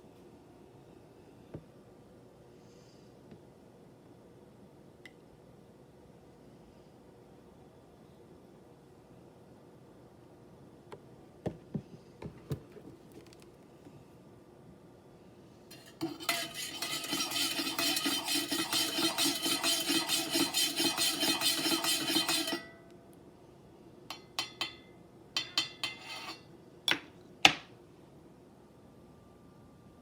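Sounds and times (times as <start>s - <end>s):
spoon clinking in coffee cup: 15.8s - 22.7s, 24.1s - 26.4s.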